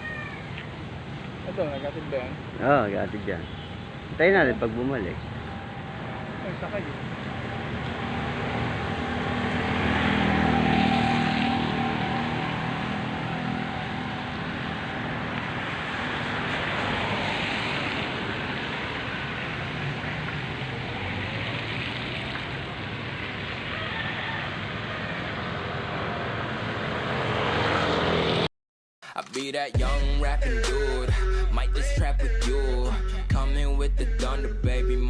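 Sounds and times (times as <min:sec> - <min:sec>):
vehicle engine passing by: 0:06.2 - 0:28.5.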